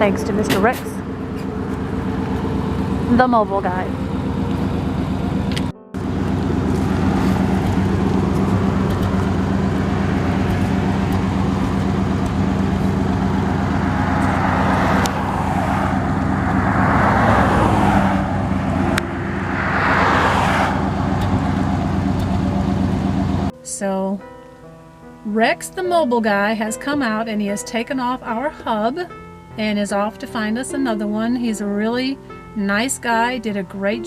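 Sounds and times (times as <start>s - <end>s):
steady engine hum: 0.0s - 23.5s
vehicles passing: 0.0s - 23.5s, 25.4s - 34.0s.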